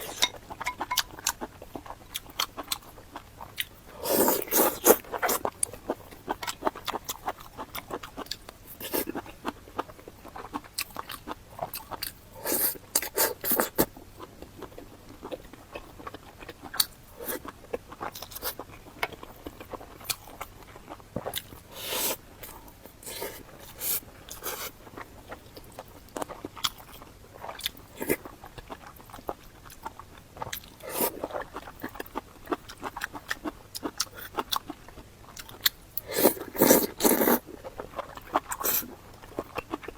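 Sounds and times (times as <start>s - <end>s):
person chewing food: 0.0s - 39.9s.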